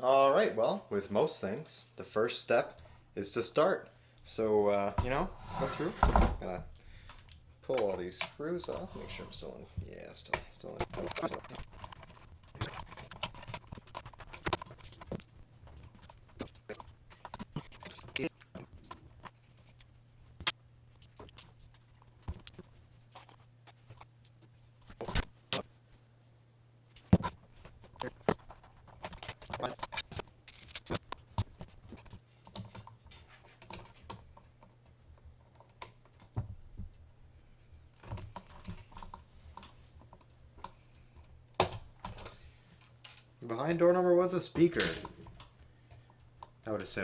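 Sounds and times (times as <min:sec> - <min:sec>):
short scrapes: 0:05.3 - 0:06.2, 0:08.7 - 0:09.6.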